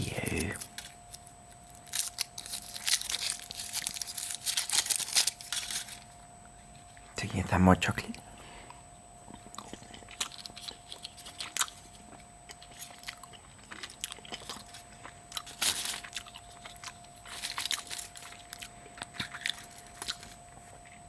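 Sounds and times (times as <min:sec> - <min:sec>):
foil wrapper crinkling: 0:00.0 - 0:06.2, 0:10.2 - 0:12.0, 0:12.6 - 0:20.7.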